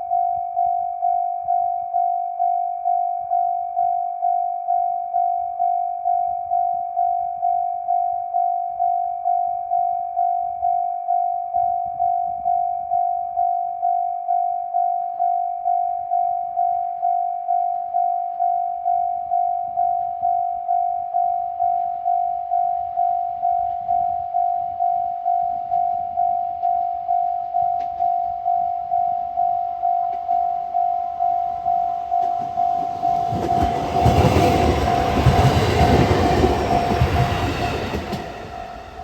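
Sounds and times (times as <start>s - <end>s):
level crossing warning bell: 27.3s - 39.0s.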